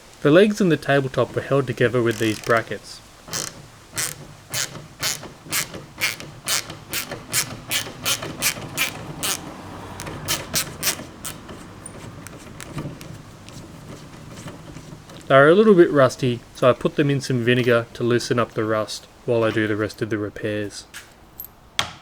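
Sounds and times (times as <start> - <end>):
hand ratchet clicking: 2.0 - 11.6.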